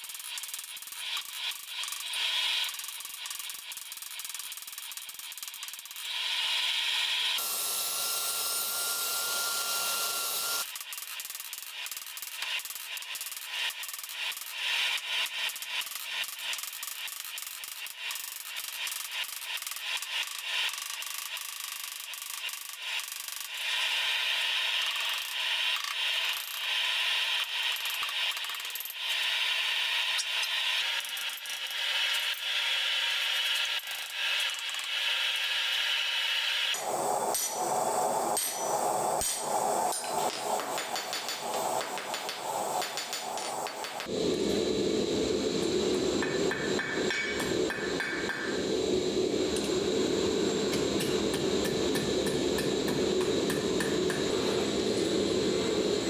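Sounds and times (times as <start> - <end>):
power tool whirring: 7.0 - 10.7.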